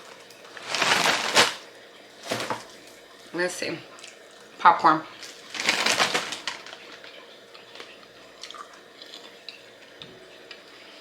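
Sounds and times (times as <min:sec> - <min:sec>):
popcorn crunching: 0:00.0 - 0:03.0, 0:04.0 - 0:10.7
chewing popcorn: 0:03.9 - 0:11.0.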